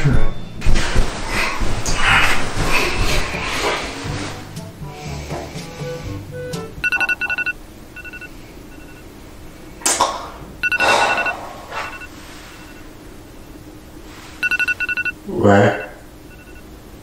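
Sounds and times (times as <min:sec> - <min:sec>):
phone alarm two-tone beeps: 0:06.4 - 0:09.0, 0:10.6 - 0:12.8, 0:14.4 - 0:16.6.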